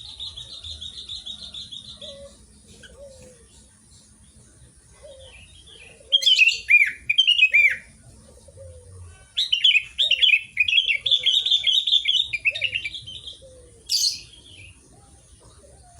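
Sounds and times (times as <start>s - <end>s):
bulbul singing: 0.0s - 15.9s.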